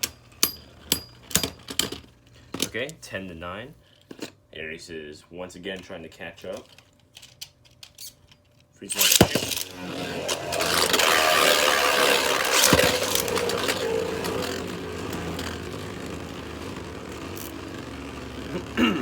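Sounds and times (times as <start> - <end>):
spinning tops whirring and scraping: 8.9 - 19.0
tops knocking together: 9.0 - 17.7.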